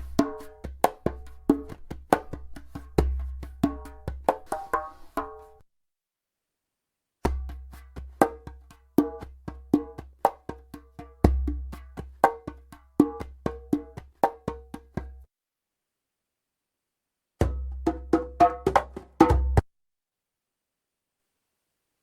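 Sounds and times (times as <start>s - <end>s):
djembe hand drumming: 0.0s - 5.4s, 7.3s - 15.2s, 17.4s - 19.6s.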